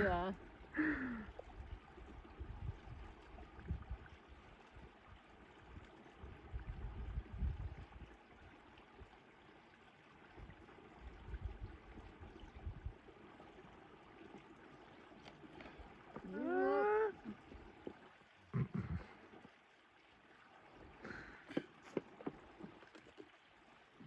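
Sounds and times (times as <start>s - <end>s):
wind buffeting microphone: 1.5s - 4.2s, 6.2s - 8.1s, 11.2s - 13.0s.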